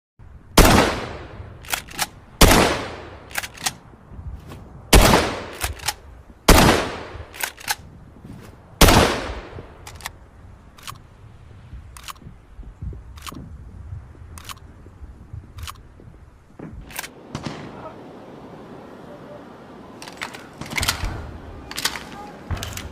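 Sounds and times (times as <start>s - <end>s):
gunshots with ringing tail: 0.6s - 1.4s, 2.4s - 3.3s, 4.9s - 5.7s, 6.5s - 7.3s, 8.8s - 9.7s
light gun clicks: 1.6s - 2.6s, 3.2s - 3.8s, 5.4s - 6.0s, 7.3s - 7.8s, 9.8s - 11.1s, 11.9s - 12.2s, 13.1s - 13.4s, 14.3s - 14.6s, 16.9s - 17.2s, 20.0s - 22.9s.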